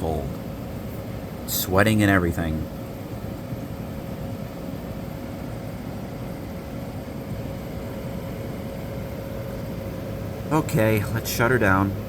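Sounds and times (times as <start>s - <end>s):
air conditioner running: 0.0s - 12.0s.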